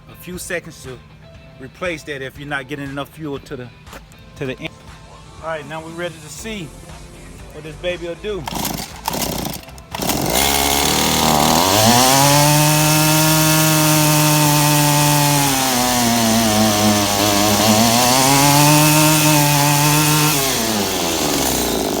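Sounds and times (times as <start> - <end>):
string trimmer engine revving: 8.4 - 22.0.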